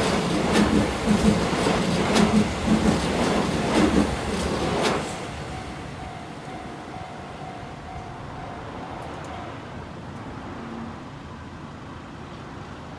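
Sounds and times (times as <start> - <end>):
level crossing warning bell: 5.5 - 9.6.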